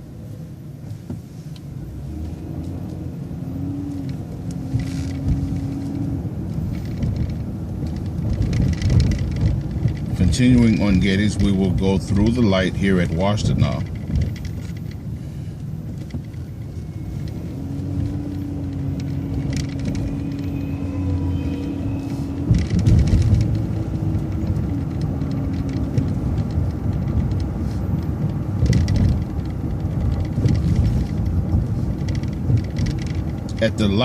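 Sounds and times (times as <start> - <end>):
bus engine and road rumble: 0.0 - 34.0
steady whine: 16.2 - 27.2.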